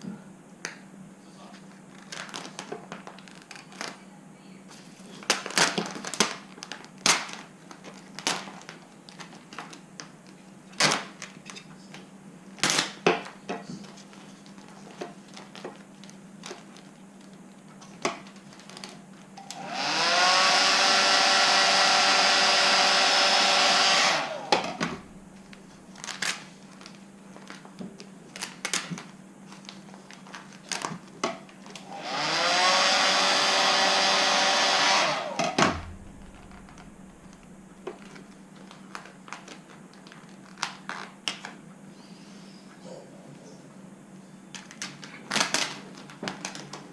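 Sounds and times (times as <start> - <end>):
vinyl crinkling: 1.4 - 4.0, 13.8 - 19.4, 24.9 - 31.8, 35.7 - 41.7
heat gun motor whine: 19.4 - 25.6, 31.8 - 38.2
rush of air: 35.6 - 38.2.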